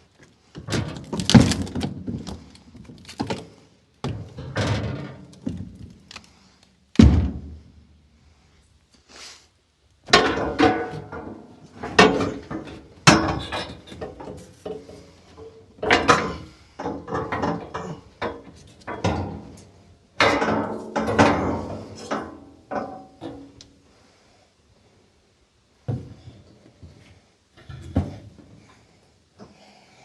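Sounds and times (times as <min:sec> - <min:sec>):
wooden boards knocking and clattering: 0:00.6 - 0:06.1, 0:07.0 - 0:07.6, 0:10.1 - 0:19.6, 0:20.2 - 0:23.6.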